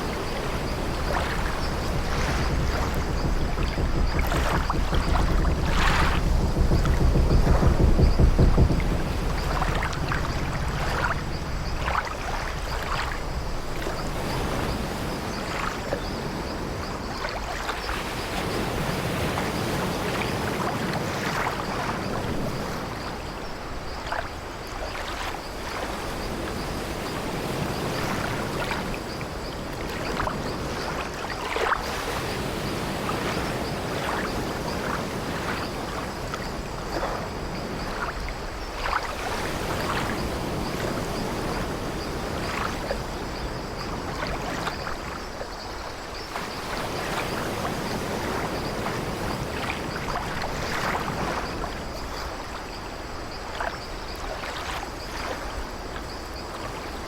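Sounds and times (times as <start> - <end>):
wooden hull creaking: 0.0 - 14.3
sea waves washing against ship: 0.0 - 57.0
low rumble: 0.2 - 14.2.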